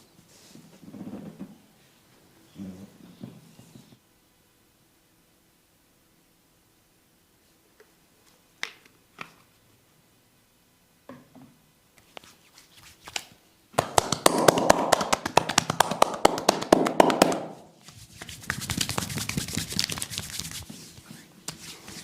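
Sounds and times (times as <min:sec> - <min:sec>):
hands tapping and slapping on skin: 0:12.0 - 0:17.5, 0:18.2 - 0:20.7.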